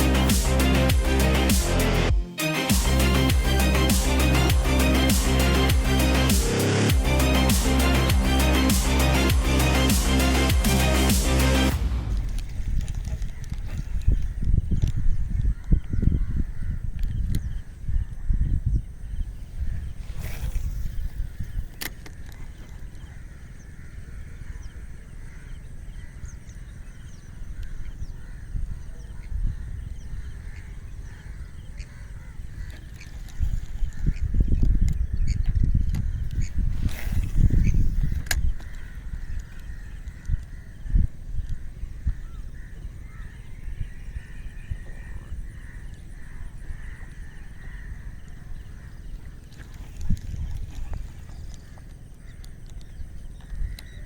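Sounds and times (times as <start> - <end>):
low uneven rumble: 3.0 - 14.8, 33.3 - 54.0
bird calls and chirps: 12.4 - 54.0.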